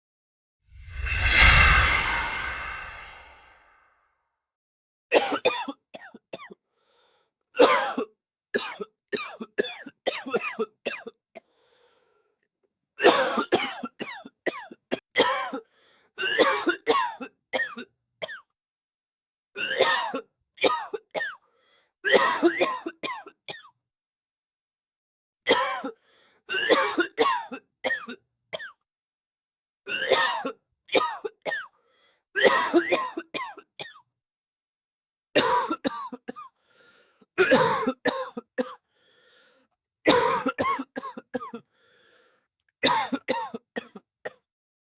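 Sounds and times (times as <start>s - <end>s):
man coughing: 37.4s - 38.3s
throat clearing: 37.4s - 38.4s.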